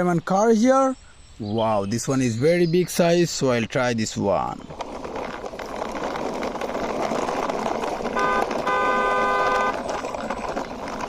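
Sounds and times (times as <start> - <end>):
plastic wheels scraping and rattling: 3.2 - 11.0
toy car electronic horn tooting: 8.0 - 10.4.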